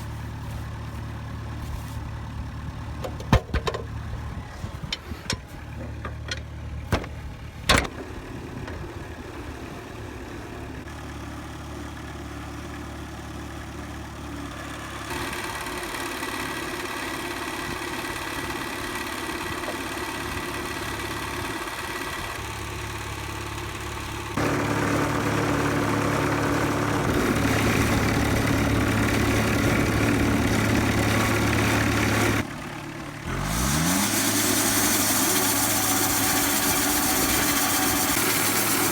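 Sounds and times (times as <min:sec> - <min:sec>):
engine running and revving: 0:24.2 - 0:32.5, 0:33.2 - 0:38.9.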